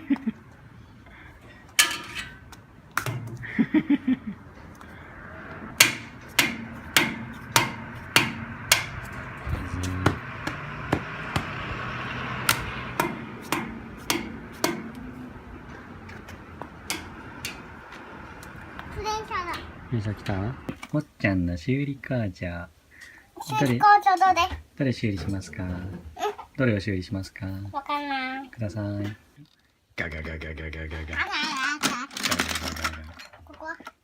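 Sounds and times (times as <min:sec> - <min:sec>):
sharp knocks: 0:05.7 - 0:18.0.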